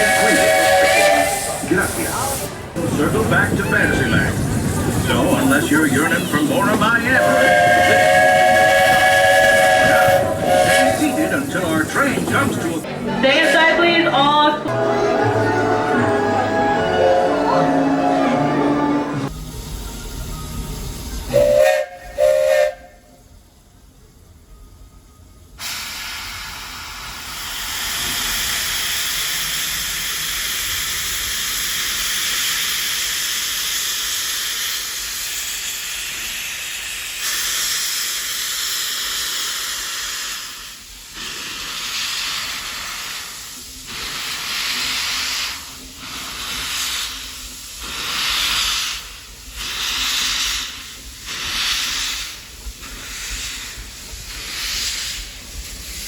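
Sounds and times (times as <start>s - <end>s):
steam engine exhaust puffs: 0.0s - 12.9s, 25.6s - 56.0s
steam locomotive hissing steam: 0.0s - 13.7s, 14.8s - 24.5s, 25.4s - 56.0s.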